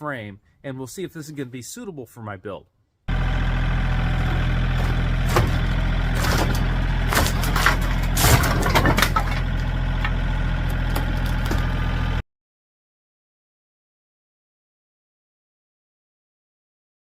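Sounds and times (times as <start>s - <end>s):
motor drone: 3.1s - 8.4s
sharp knocks and clanks: 4.2s - 11.7s.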